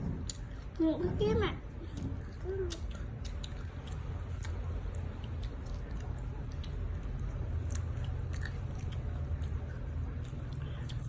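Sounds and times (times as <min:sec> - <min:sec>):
children chewing: 0:00.0 - 0:11.0
steady low hum: 0:00.0 - 0:11.0
wet mouth clicks and smacks: 0:01.9 - 0:11.0.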